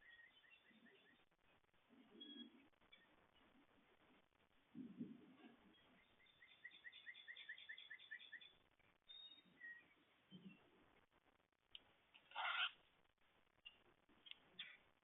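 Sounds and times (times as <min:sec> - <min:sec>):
faint bird chirps: 0:00.0 - 0:01.3, 0:02.0 - 0:03.6, 0:05.6 - 0:10.7, 0:13.6 - 0:14.9
soft low rumble: 0:00.7 - 0:06.2.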